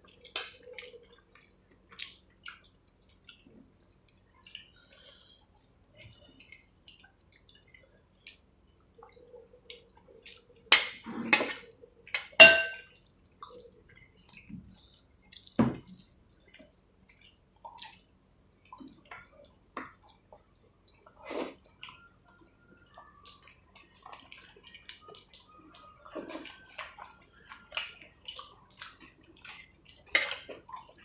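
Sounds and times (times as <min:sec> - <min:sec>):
wet eating by hand: 0:00.0 - 0:12.3, 0:12.9 - 0:31.0
ringing clink: 0:12.4 - 0:12.8.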